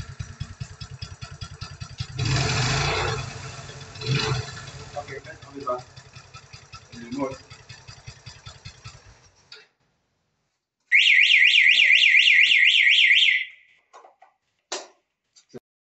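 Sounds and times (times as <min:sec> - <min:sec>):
motorcycle engine idling: 0:00.0 - 0:09.5
electronic siren alarm warble: 0:10.9 - 0:13.7.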